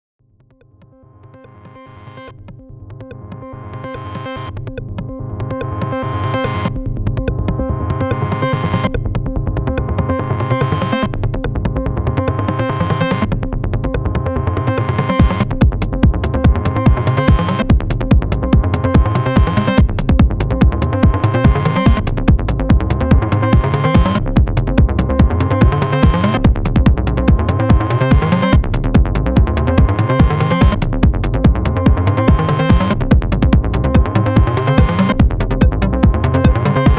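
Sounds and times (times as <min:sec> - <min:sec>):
repeating synth bass sequence: 0:05.2 - 0:36.9
drum machine beat: 0:15.2 - 0:36.9.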